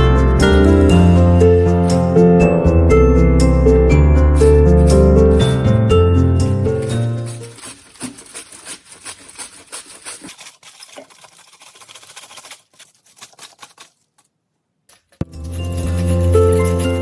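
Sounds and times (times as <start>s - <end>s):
kitchen utensils tapping and clicking: 14.9s - 17.0s.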